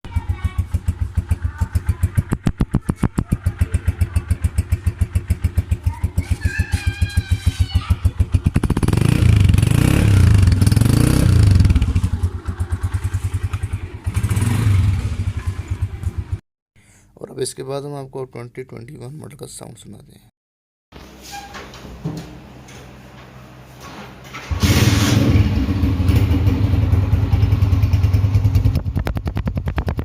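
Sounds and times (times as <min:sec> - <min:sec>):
motorcycle engine idling and revving: 0:00.1 - 0:16.4, 0:24.5 - 0:30.0.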